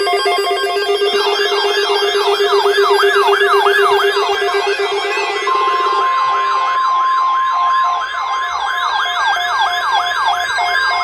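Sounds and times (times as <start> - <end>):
steady high alert tone: 0.0 - 8.3
lower steady tone: 0.0 - 8.7
electronic siren sweeping: 0.0 - 11.0.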